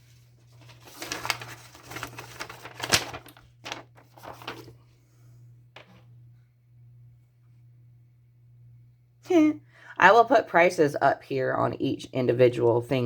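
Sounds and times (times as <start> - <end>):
faint low hum: 0.0 - 13.0
packaging clicks and rustles: 0.5 - 4.7.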